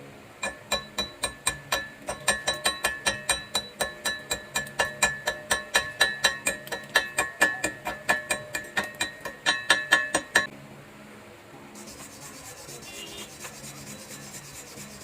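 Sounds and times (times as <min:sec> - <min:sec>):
metal knocking on steel: 0:00.4 - 0:10.5.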